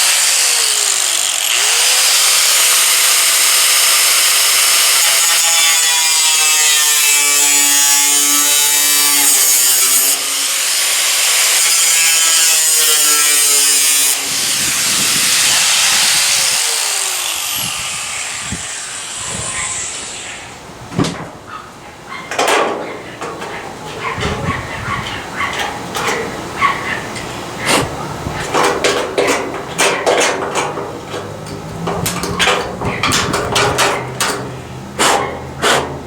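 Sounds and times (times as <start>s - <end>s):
power tool cutting sheet steel: 0.0s - 20.6s.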